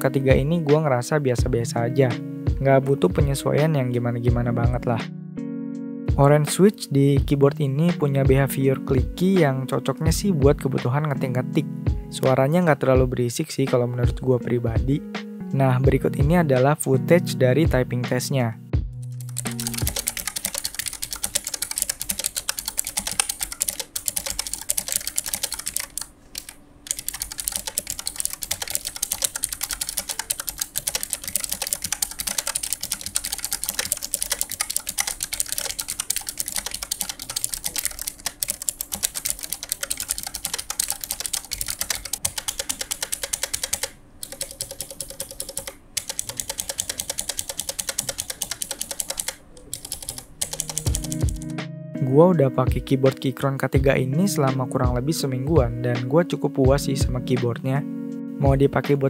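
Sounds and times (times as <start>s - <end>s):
mechanical keyboard typing clicks: 19.0s - 51.5s.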